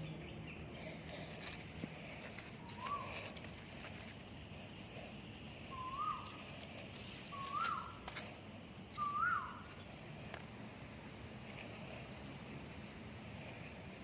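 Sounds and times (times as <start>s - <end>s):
bird whistled call: 2.6s - 3.3s, 5.7s - 6.4s, 7.3s - 8.0s, 9.0s - 9.8s.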